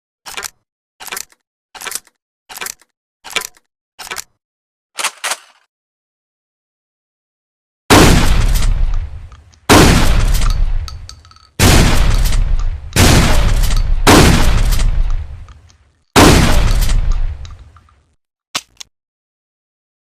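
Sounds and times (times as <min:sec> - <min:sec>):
short mechanical clicks: 0:00.3 - 0:04.4
shotgun blasts with echo: 0:07.9 - 0:15.6, 0:16.2 - 0:17.8.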